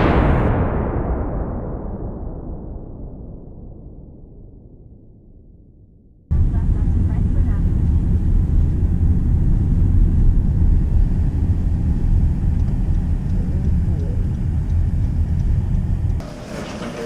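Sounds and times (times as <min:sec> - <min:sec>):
car cabin road rumble: 0:06.3 - 0:16.2
faint voices: 0:13.2 - 0:14.3.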